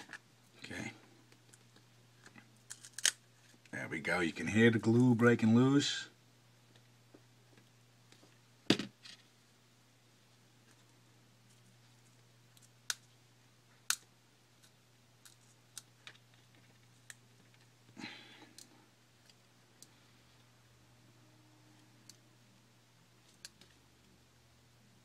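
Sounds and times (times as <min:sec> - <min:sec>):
faint steady hum: 0:00.0 - 0:25.0
glue cracking and snapping: 0:02.3 - 0:03.2.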